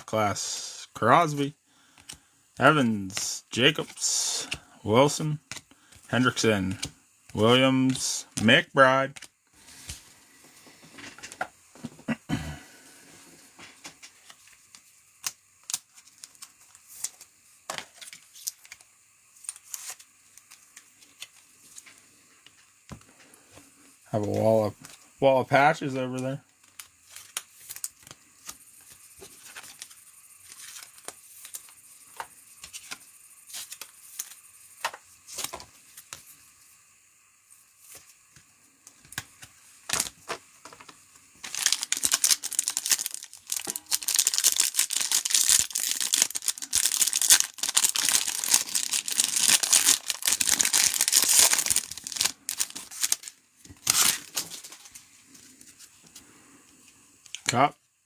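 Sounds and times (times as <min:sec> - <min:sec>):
handling trading cards: 0:01.9 - 0:10.0, 0:14.0 - 0:21.9, 0:26.1 - 0:36.3, 0:37.8 - 0:56.2
foil wrappers tearing and crumpling: 0:15.2 - 0:17.3, 0:19.4 - 0:21.4, 0:26.7 - 0:31.8, 0:41.4 - 0:55.0.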